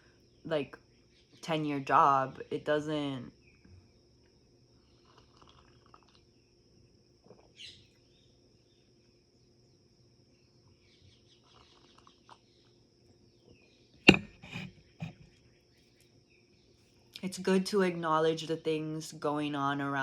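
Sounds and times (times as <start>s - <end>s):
faint bird chirps: 3.4s - 14.0s.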